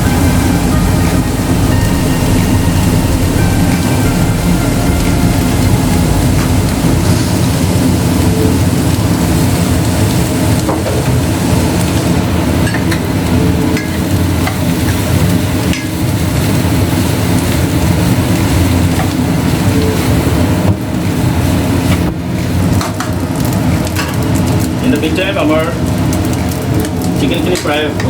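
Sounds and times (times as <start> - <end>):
loud low rumble: 0.0 - 12.4
rice sizzling in a pan: 0.0 - 28.0.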